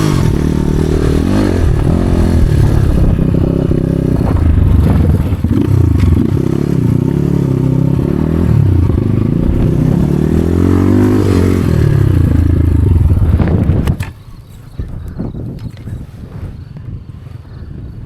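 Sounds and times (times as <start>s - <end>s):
motorcycle engine revving: 0.0s - 14.3s.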